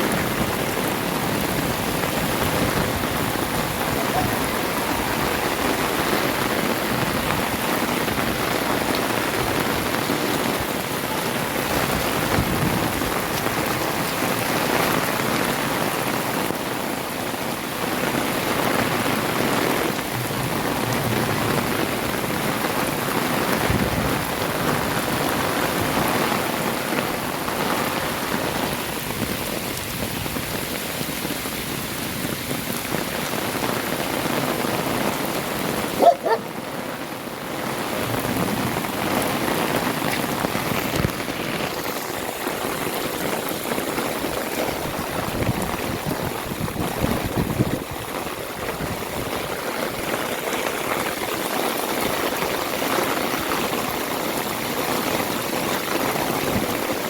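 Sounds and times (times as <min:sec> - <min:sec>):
heavy rain splashing: 0:00.0 - 0:57.0.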